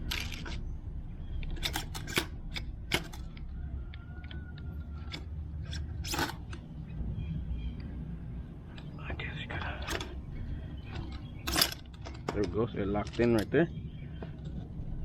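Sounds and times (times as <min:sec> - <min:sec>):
plastic and metal parts clicking: 0:00.0 - 0:00.6, 0:01.4 - 0:06.7, 0:10.8 - 0:13.6
steady low hum: 0:00.0 - 0:15.0.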